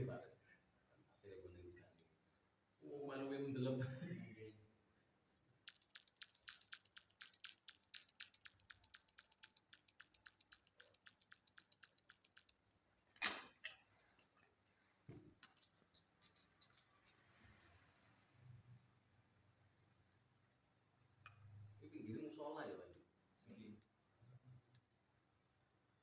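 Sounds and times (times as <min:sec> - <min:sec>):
rapid small mechanical clicks: 0:05.6 - 0:12.6.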